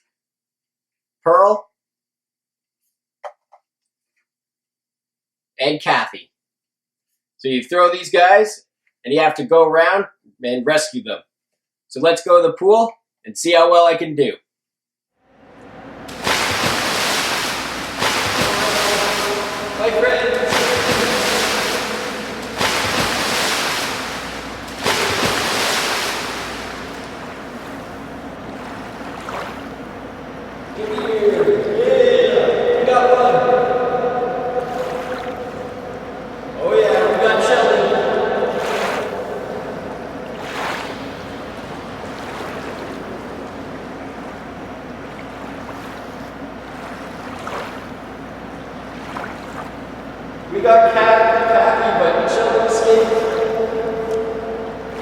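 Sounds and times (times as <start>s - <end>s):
loud splashes: 15.3s - 55.0s
pool water splashing: 15.3s - 55.0s
steady hiss: 15.6s - 33.3s.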